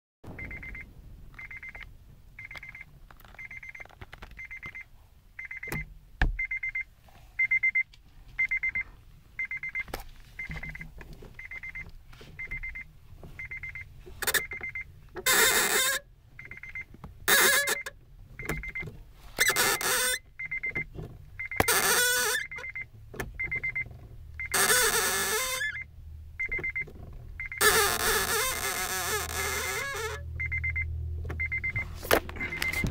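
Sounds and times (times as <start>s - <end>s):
short high beeps: 0.3s - 1.8s, 32.4s - 32.9s
clutch squeaking: 13.4s - 32.9s.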